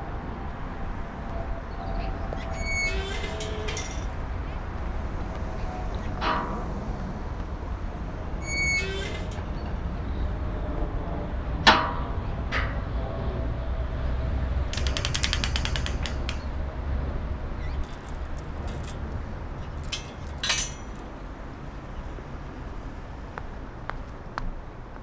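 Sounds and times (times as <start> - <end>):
short rattles: 2.9 - 4.2, 8.4 - 9.8, 14.0 - 16.8, 17.6 - 21.1
ratchet-like mechanical clicks: 14.7 - 16.6
sharp ticks: 14.7 - 16.6.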